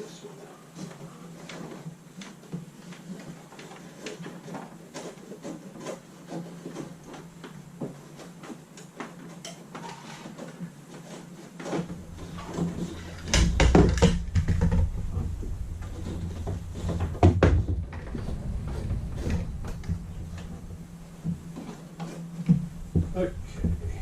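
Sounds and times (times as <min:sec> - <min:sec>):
wire knocking and rubbing in cabinetry: 0:02.4 - 0:24.0
steady low hum: 0:11.8 - 0:24.0.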